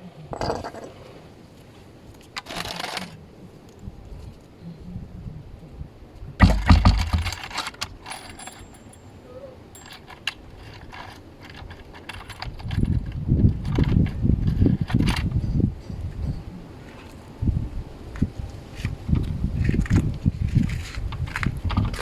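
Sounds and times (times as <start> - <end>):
low bumping: 6.3 - 9.0
loud clatter and knock: 6.4 - 8.5
metal hardware clicks and rattles: 6.4 - 16.2.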